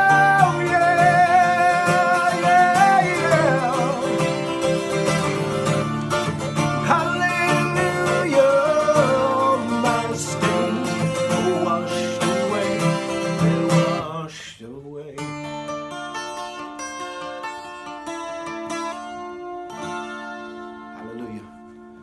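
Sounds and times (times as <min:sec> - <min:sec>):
man singing: 0:00.0 - 0:05.8, 0:06.6 - 0:15.5
guitar playing: 0:00.0 - 0:14.2, 0:15.1 - 0:22.0.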